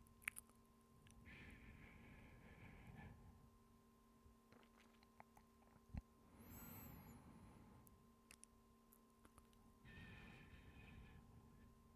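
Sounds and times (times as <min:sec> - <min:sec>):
wet lip click: 0:00.2 - 0:00.6
soft steady breath: 0:01.1 - 0:03.8, 0:06.2 - 0:08.1, 0:09.8 - 0:11.9.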